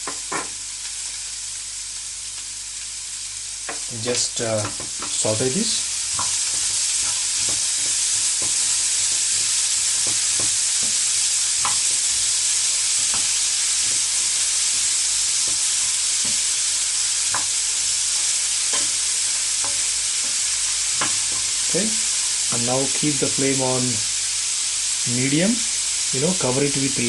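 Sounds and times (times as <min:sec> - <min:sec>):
vegetables sizzling in hot oil: 0:00.0 - 0:27.0
utensil scraping and tapping pan: 0:06.1 - 0:08.8.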